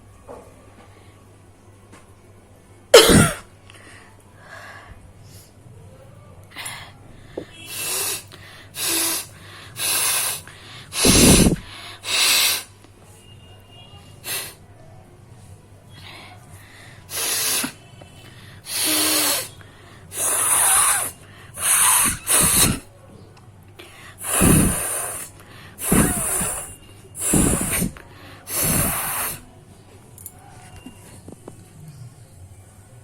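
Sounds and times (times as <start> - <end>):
person blowing nose: 7.6 - 12.7, 14.2 - 14.6, 17.1 - 17.8, 18.6 - 22.9, 24.2 - 29.5.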